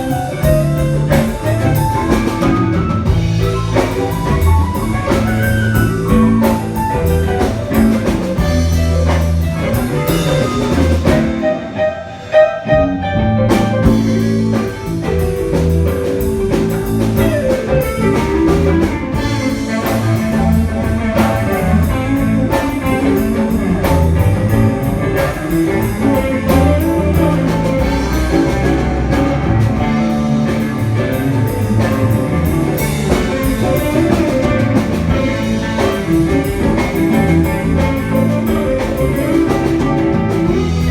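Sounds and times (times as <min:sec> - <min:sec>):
electric guitar: 0:00.0 - 0:40.9
live band blues-jazz instrumental: 0:00.0 - 0:40.9.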